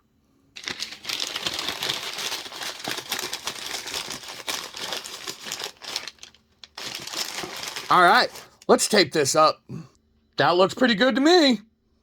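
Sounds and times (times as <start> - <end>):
paper crumpling: 0.6 - 8.6.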